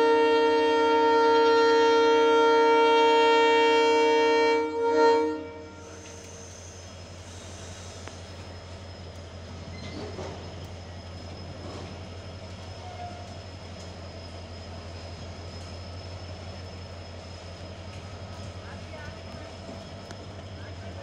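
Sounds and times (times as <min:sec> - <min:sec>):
diesel train drone: 0:00.0 - 0:21.0.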